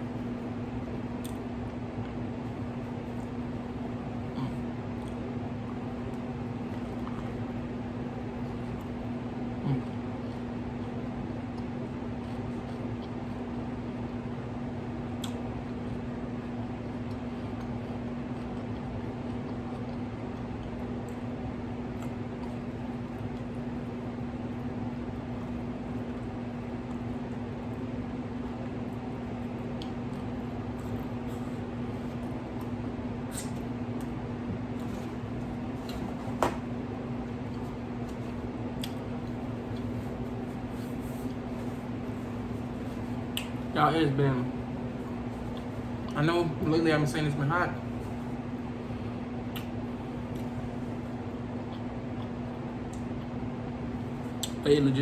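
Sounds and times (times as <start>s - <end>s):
droning hum: 0.0s - 55.0s
wet mouth clicks and smacks: 15.2s - 15.4s, 33.3s - 33.6s, 49.5s - 50.5s, 54.4s - 54.6s
close-up chewing: 17.0s - 21.2s, 37.0s - 43.8s.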